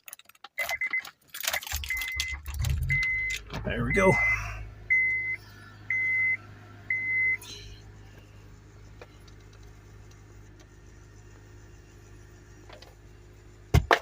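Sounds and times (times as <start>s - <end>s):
car chime beep: 0.6s - 7.5s
car engine idling: 1.7s - 14.0s.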